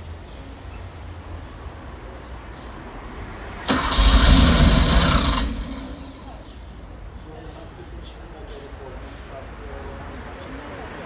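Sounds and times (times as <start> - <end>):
car engine cranking and firing: 3.4 - 6.6.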